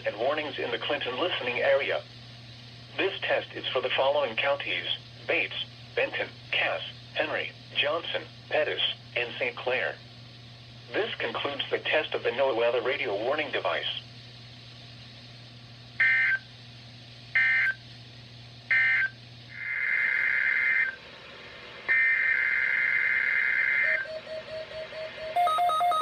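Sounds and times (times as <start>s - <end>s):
screechy digital data tones: 18.7s - 21.0s, 21.9s - 26.0s
pulsing beep: 23.8s - 26.0s.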